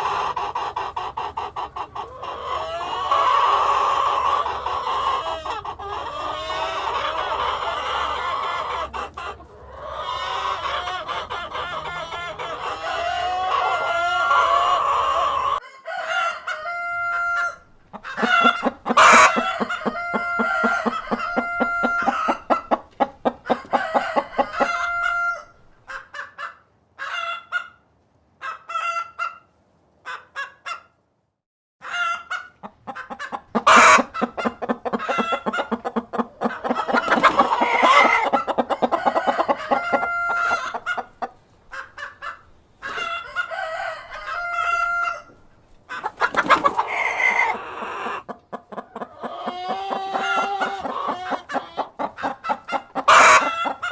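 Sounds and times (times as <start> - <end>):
hens clucking: 0.0 - 27.8, 28.4 - 29.5, 30.1 - 31.0, 31.8 - 53.9
rooster crowing: 12.8 - 22.6, 23.5 - 25.5, 36.8 - 40.8, 43.0 - 45.4.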